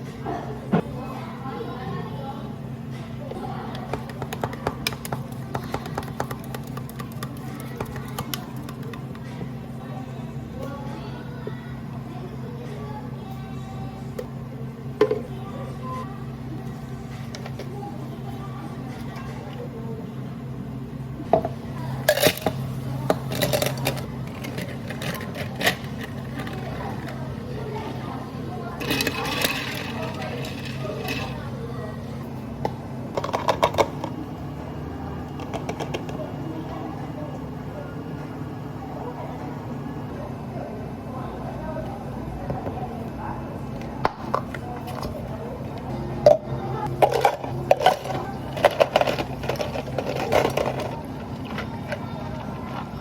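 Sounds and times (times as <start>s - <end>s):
low hum of cafe equipment: 0.0s - 53.0s
dishes and utensils clinking: 21.4s - 27.2s, 28.8s - 31.5s, 46.2s - 52.9s.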